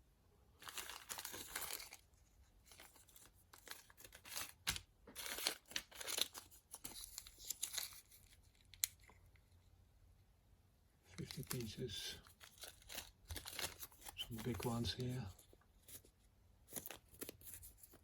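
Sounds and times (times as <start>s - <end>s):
plastic bags crinkling: 0.6s - 9.1s, 11.2s - 16.1s.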